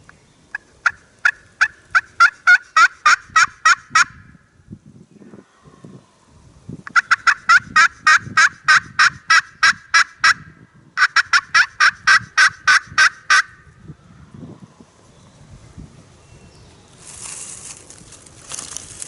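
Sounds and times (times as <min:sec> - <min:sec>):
turkey yelping: 0:00.8 - 0:04.2, 0:06.9 - 0:10.4, 0:11.0 - 0:13.6.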